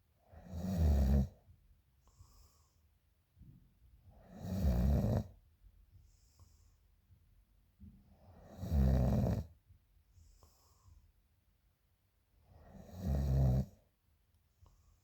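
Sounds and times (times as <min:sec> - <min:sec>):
woman snoring loudly: 0:00.4 - 0:01.3, 0:04.3 - 0:05.3, 0:08.5 - 0:09.4, 0:12.8 - 0:13.7
soft breath: 0:02.0 - 0:04.3, 0:06.0 - 0:07.1, 0:10.1 - 0:11.3, 0:14.5 - 0:15.0.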